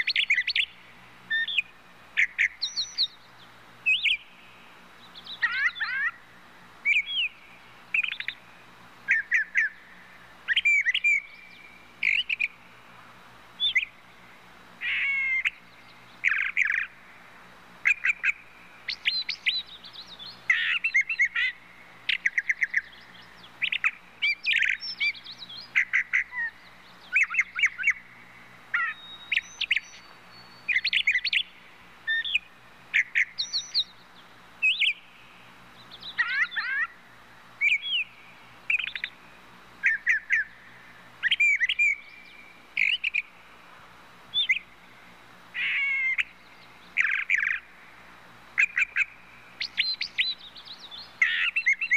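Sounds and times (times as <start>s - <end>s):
birds chirping: 0.0s - 51.9s.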